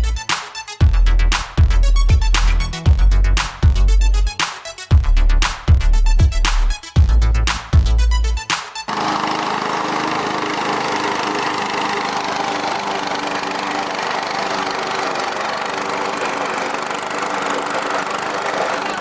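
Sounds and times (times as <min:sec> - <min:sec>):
lawnmower engine droning: 0:08.9 - 0:19.0.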